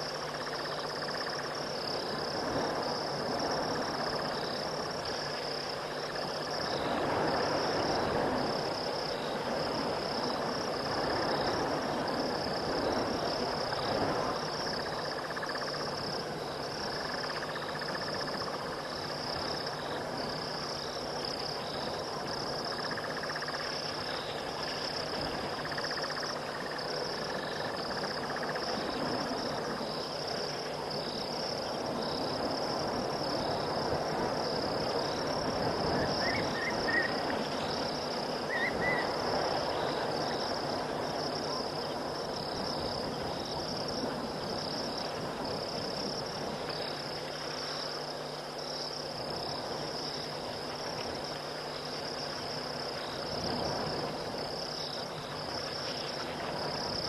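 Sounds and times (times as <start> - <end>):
constant low hiss: 0.0 - 57.0
crickets trilling: 0.0 - 57.0.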